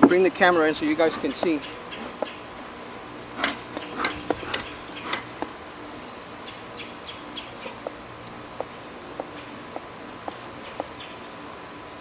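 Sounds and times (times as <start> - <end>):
bees buzzing: 0.0 - 12.0
sharp clicks and knocks: 3.3 - 5.6.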